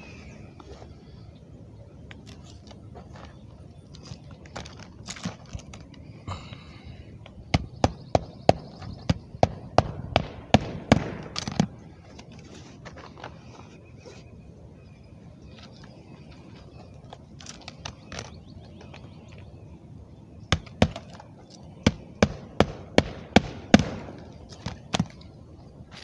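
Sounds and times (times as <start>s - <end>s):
rapid sharp knocks: 21.8s - 24.2s.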